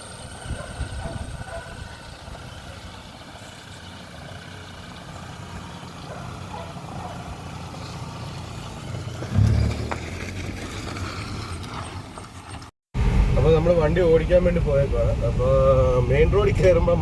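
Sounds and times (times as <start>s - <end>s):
car engine idling: 0.0s - 17.0s
low-pitched burst: 9.3s - 10.2s.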